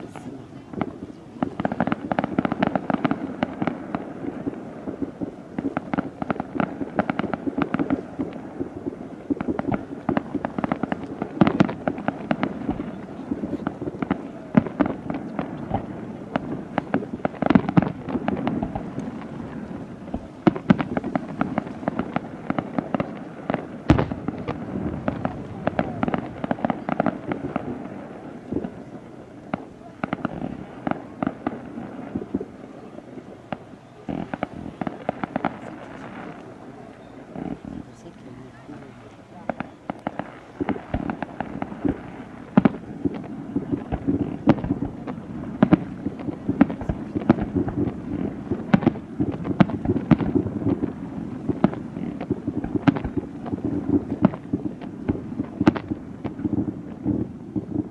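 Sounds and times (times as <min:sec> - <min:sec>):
fireworks crackling and popping: 0:00.0 - 0:57.9
deep firework bang: 0:09.4 - 0:28.8.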